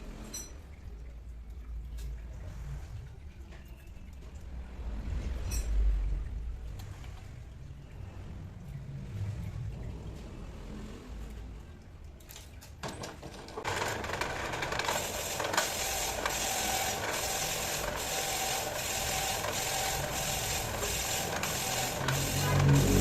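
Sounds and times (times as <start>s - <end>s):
workshop machine whirring: 13.0s - 23.0s.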